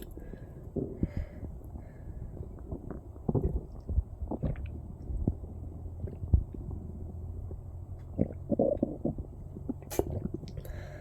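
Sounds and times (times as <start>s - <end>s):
stomach gurgling: 0.0s - 10.8s.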